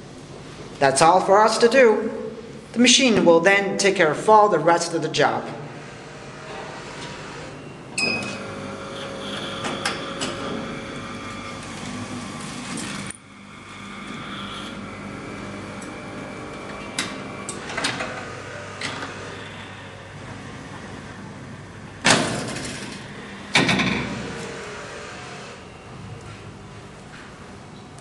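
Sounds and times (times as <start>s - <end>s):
binding machine motor whirring: 5.4s - 26.6s
machine clicks and clunks: 6.5s - 10.6s, 15.7s - 19.5s, 22.0s - 24.8s.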